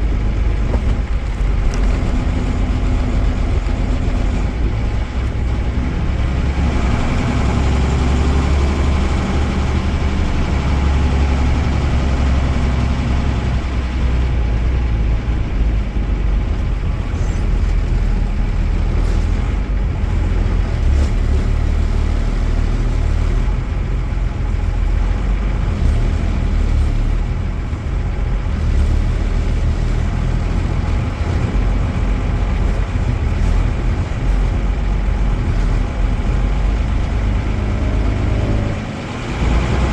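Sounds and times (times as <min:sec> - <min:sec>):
diesel bus engine running: 0:00.0 - 0:39.9.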